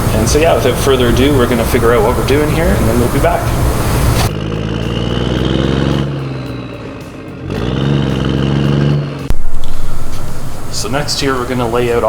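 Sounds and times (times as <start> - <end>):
vehicle engine revving: 3.6 - 12.0.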